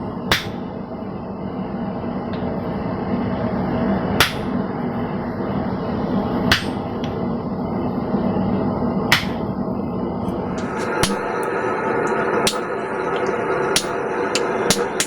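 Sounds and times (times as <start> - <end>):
hammer striking hot steel: 0.3 - 0.7, 4.2 - 4.6, 6.5 - 6.9, 9.1 - 9.4, 10.3 - 15.0.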